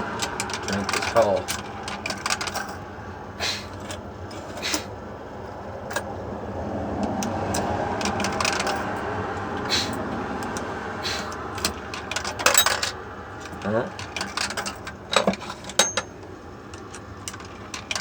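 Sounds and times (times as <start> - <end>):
sharp clicks and knocks: 0.0 - 2.8, 7.0 - 9.7, 11.3 - 18.0
road vehicle passing: 0.0 - 18.0.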